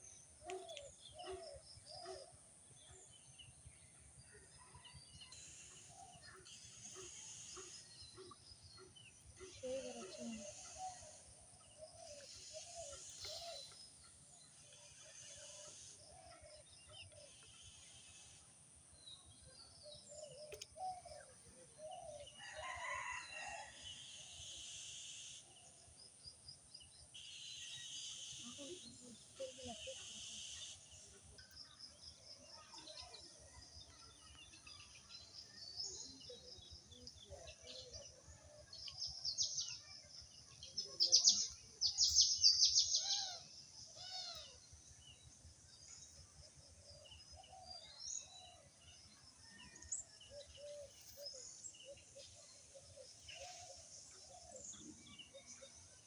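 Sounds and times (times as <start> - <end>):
small birds chirping: 5.8 - 18.0, 26.8 - 56.0.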